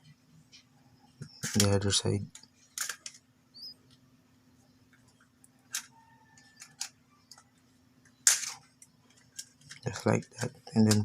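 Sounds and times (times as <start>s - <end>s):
faint steady hum: 0.0s - 11.0s
plastic parts clicking: 1.3s - 3.2s.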